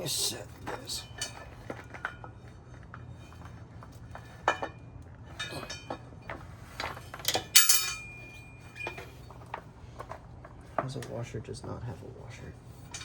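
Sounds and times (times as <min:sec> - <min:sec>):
metal parts clinking: 0:06.8 - 0:09.5, 0:12.8 - 0:13.0.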